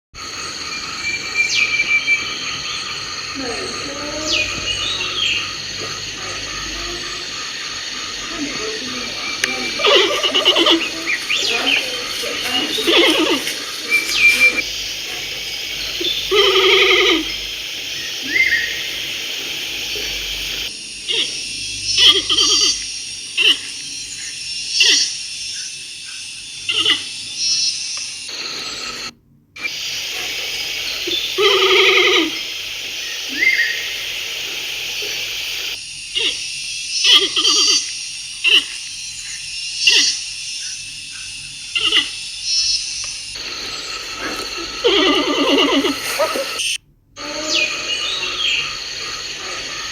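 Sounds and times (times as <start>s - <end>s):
steady background hiss: 0.2s - 49.9s
bear growling: 8.3s - 20.7s, 30.0s - 32.9s.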